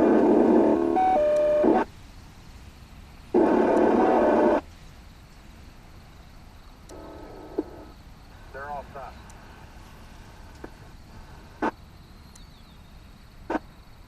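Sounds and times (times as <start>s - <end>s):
beeping tones: 0.0s - 1.8s
radio static bursts: 0.0s - 1.9s, 3.3s - 4.6s, 6.9s - 9.6s, 10.3s - 11.8s.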